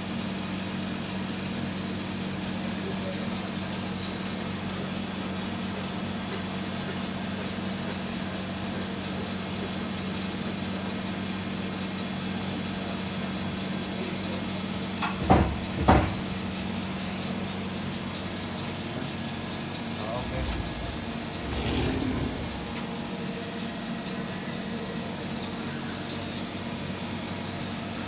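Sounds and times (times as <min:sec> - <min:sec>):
loud knocks: 0:15.2 - 0:16.3
lathe humming: 0:20.0 - 0:23.1.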